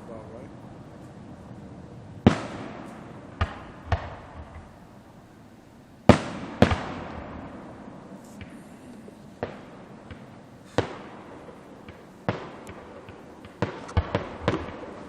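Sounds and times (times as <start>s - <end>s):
firework shells bursting: 2.2s - 5.1s, 6.0s - 15.0s.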